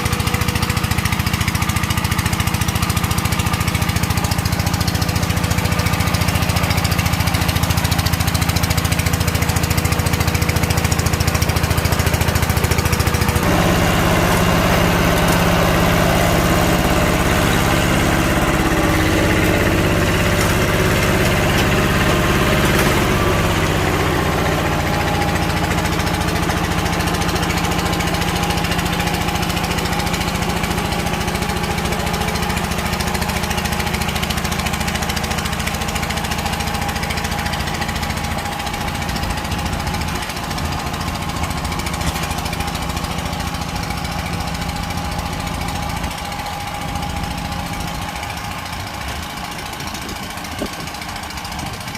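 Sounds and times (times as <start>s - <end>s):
diesel tractor engine running: 0.0s - 51.9s.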